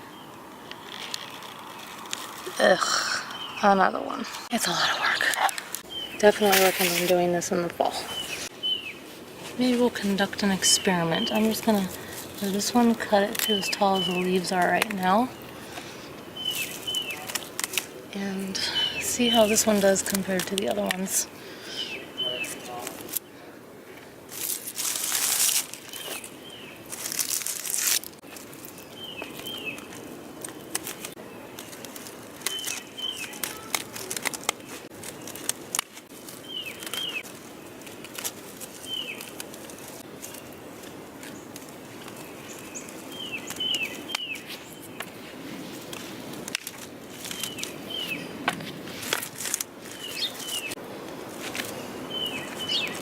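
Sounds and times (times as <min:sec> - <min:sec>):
dry stems rustling: 0:00.0 - 0:53.0.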